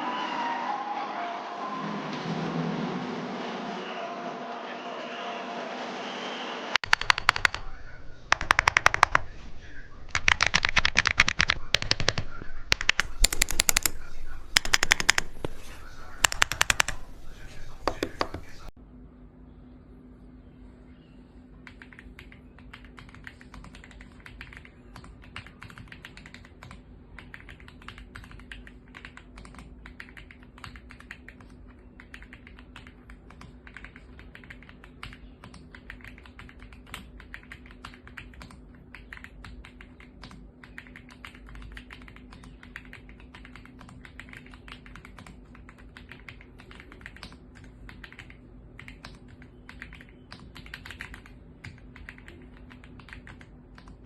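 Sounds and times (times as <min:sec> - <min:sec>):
fast mechanical keyboard typing: 0:06.8 - 0:09.3, 0:10.1 - 0:15.5, 0:16.1 - 0:17.1, 0:21.6 - 0:54.0.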